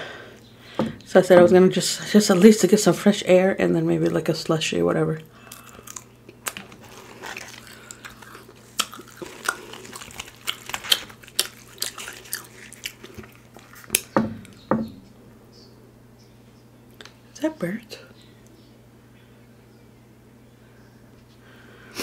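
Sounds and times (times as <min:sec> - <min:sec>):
faint low hum: 0:00.0 - 0:22.0
person chewing food: 0:05.3 - 0:14.6.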